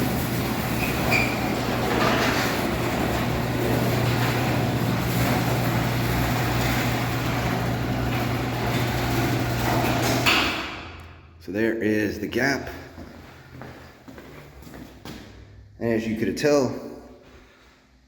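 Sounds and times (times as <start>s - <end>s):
door rattling and rolling: 0.0s - 10.8s
garage door opener motor humming: 0.0s - 11.2s.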